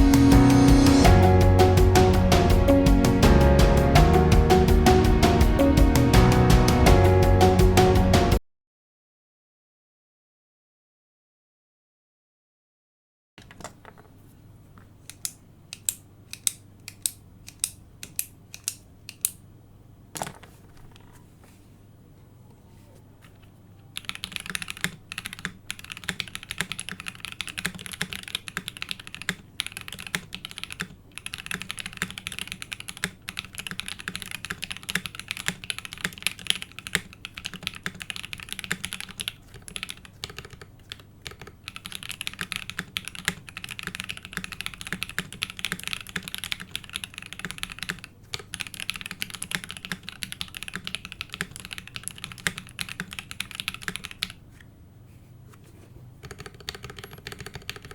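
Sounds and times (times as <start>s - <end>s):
mechanical keyboard typing: 15.1s - 19.4s, 24.0s - 54.4s, 56.2s - 57.9s.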